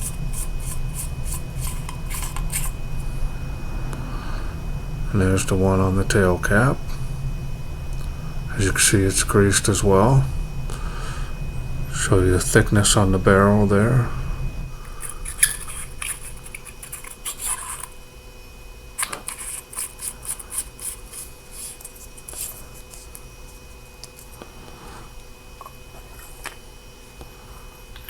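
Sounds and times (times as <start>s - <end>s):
scraping and rubbing: 0.0s - 3.2s, 14.7s - 18.0s, 19.0s - 23.2s.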